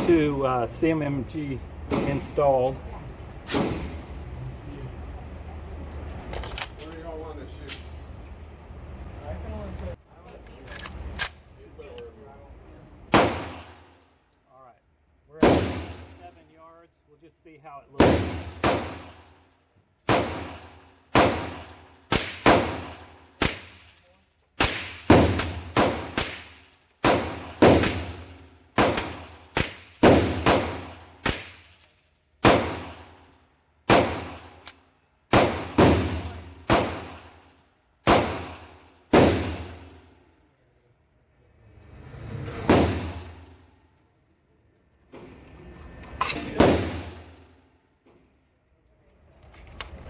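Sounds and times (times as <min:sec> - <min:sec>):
rifle shots with ringing tail: 0:15.4 - 0:16.2, 0:18.0 - 0:19.4, 0:20.1 - 0:24.0, 0:24.6 - 0:31.8, 0:32.4 - 0:33.2, 0:33.9 - 0:34.6, 0:35.3 - 0:40.0.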